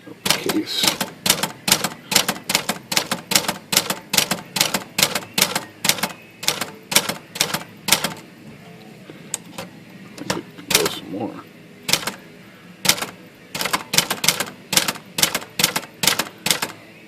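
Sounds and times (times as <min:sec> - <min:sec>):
manual typewriter keystrokes: 0:00.2 - 0:08.2, 0:11.9 - 0:12.2, 0:12.8 - 0:16.8.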